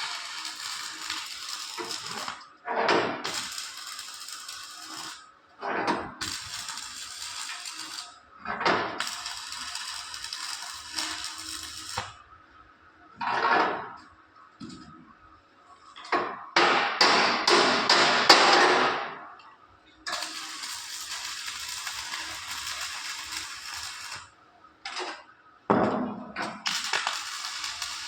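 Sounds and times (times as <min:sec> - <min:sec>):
welding arc strikes: 0:00.0 - 0:02.4, 0:03.2 - 0:05.2, 0:06.2 - 0:08.2, 0:09.0 - 0:12.2, 0:20.1 - 0:24.3, 0:26.6 - 0:28.0
welding arc crackling and hissing: 0:00.0 - 0:02.5, 0:03.2 - 0:05.3, 0:06.2 - 0:08.2, 0:09.0 - 0:12.2, 0:20.1 - 0:24.4, 0:26.6 - 0:28.0.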